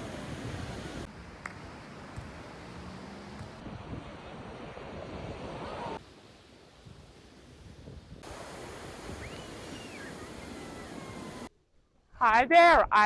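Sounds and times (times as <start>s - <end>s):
wind noise on microphone: 0.0s - 1.1s, 3.6s - 6.0s, 6.8s - 11.5s
ocean surf washing onto beach: 0.0s - 2.6s, 3.6s - 6.0s, 8.2s - 11.5s.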